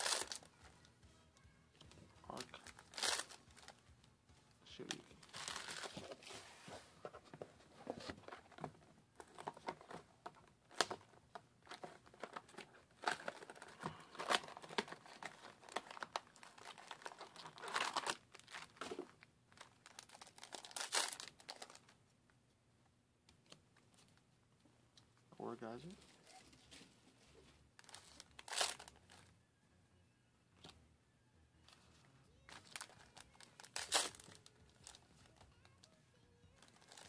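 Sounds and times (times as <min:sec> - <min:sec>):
wrappers crinkling and tearing: 0:00.0 - 0:00.6, 0:02.3 - 0:03.8, 0:05.0 - 0:06.3, 0:11.6 - 0:21.9, 0:27.8 - 0:29.3, 0:32.4 - 0:35.9, 0:36.5 - 0:37.0
cards being handled: 0:00.0 - 0:01.0, 0:01.8 - 0:19.2.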